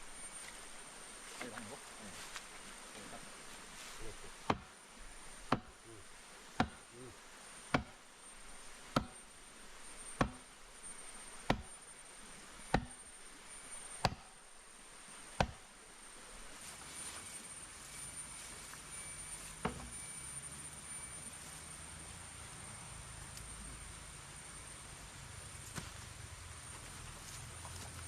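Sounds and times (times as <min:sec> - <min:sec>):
high insect drone: 0:00.0 - 0:28.0
chopping strikes with short ring: 0:04.4 - 0:04.7, 0:05.5 - 0:05.8, 0:06.6 - 0:06.9, 0:07.7 - 0:08.0, 0:08.9 - 0:11.9, 0:12.6 - 0:14.4, 0:15.3 - 0:15.6.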